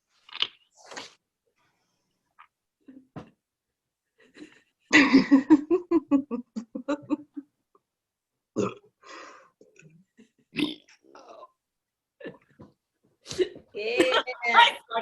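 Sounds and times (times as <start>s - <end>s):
woman burping: 8.6s - 8.9s, 10.6s - 11.6s.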